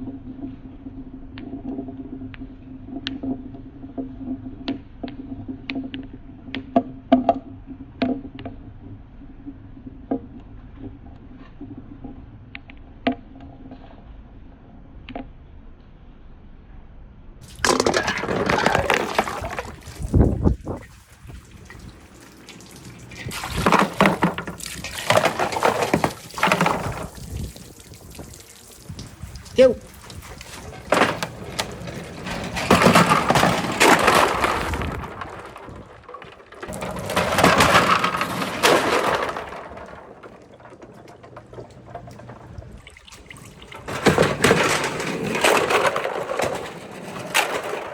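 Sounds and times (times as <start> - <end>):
marbles rolling along a track: 17.4 - 42.8, 43.6 - 47.9
water rushing down a gutter: 17.4 - 47.9.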